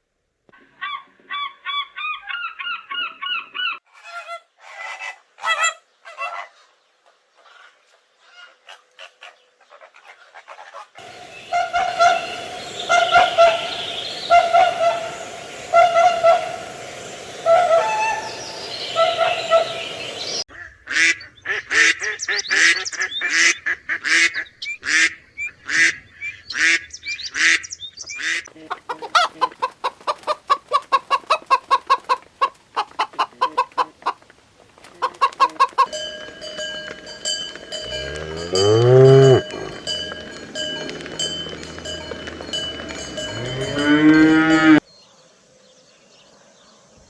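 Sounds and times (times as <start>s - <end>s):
cow mooing: 11.0s - 19.8s, 37.2s - 44.8s
fowl honking: 11.0s - 20.4s, 35.0s - 43.9s
clucking or quacking: 11.0s - 22.0s, 28.2s - 34.2s, 34.8s - 36.0s
cowbell ringing: 35.9s - 44.8s.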